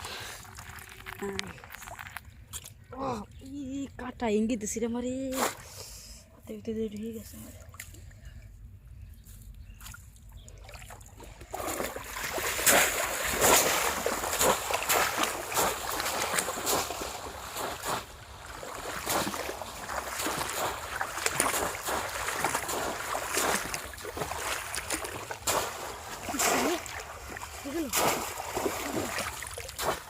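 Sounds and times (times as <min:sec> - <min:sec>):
shallow water splashing: 0:00.0 - 0:02.9, 0:09.8 - 0:30.0.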